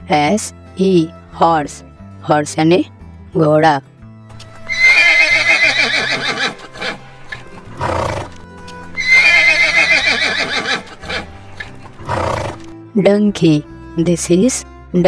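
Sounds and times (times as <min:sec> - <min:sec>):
background music: 0:00.0 - 0:15.0
horse whinnying: 0:04.7 - 0:07.1, 0:09.0 - 0:12.6.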